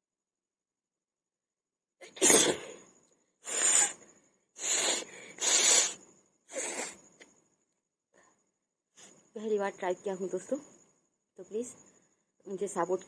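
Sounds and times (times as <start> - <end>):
person sneezing: 2.0 - 2.8, 3.4 - 4.0, 4.6 - 7.0
person blowing breath through nose: 2.2 - 2.8, 3.4 - 4.0, 4.6 - 7.0.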